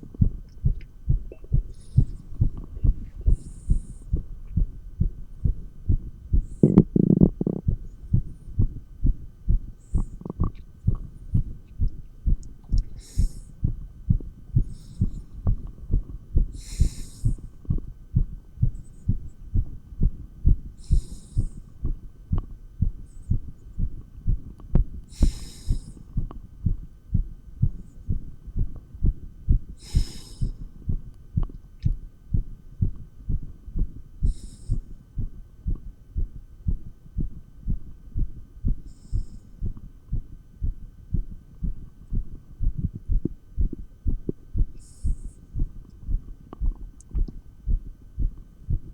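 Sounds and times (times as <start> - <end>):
faint steady hum: 0.0 - 48.9
heartbeat through stethoscope: 0.0 - 48.9.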